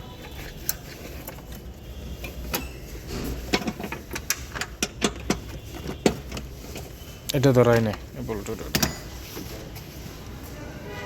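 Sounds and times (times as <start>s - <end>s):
metal tools clinking: 7.6s - 9.6s.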